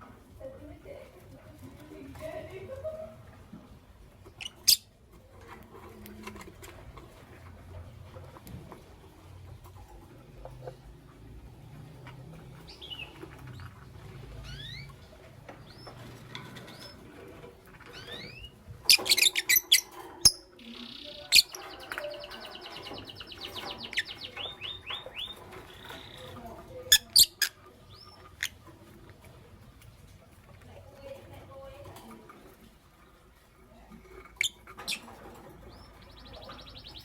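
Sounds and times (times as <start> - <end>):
lovebirds chirping and shrieking: 4.2 - 5.0, 12.0 - 30.2, 34.2 - 37.0.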